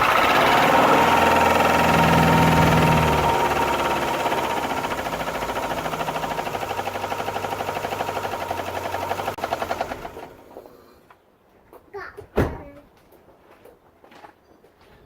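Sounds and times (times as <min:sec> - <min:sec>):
car engine running: 0:00.0 - 0:10.7.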